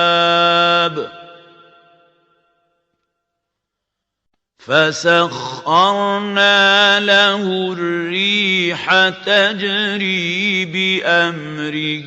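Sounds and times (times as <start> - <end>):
man chanting recitation: 0.0 - 1.4, 4.6 - 12.0.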